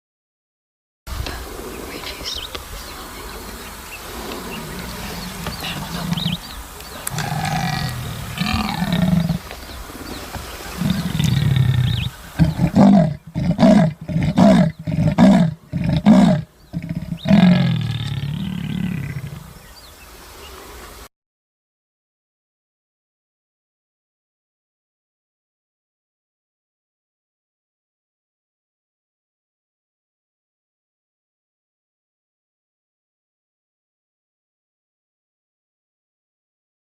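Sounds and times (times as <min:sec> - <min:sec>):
big cat roaring and grunting: 0:07.1 - 0:09.5, 0:10.8 - 0:19.6.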